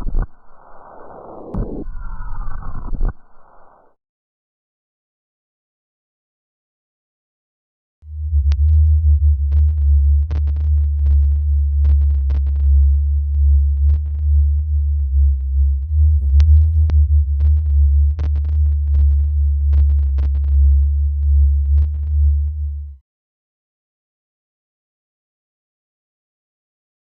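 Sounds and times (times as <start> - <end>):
deep electronic drone: 8.1 - 23.0.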